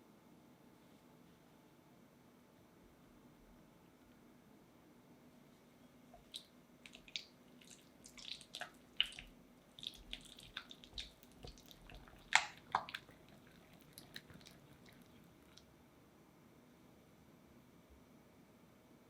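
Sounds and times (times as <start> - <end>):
utensil squishing sticky food: 6.1 - 15.8.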